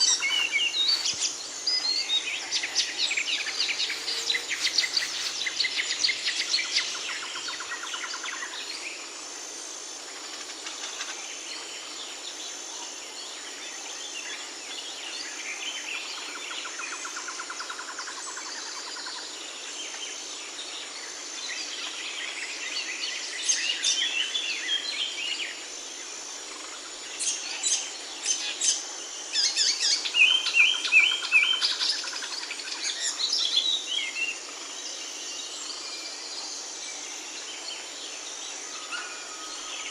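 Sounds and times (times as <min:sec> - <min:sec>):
small birds chirping: 0:00.0 - 0:07.8.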